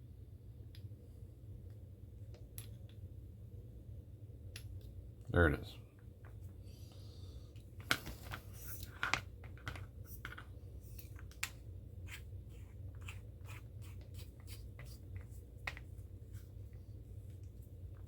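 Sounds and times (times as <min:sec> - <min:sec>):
steady low hum: 0:00.0 - 0:18.0
hands handling connector and tools: 0:07.6 - 0:11.6, 0:14.0 - 0:18.0.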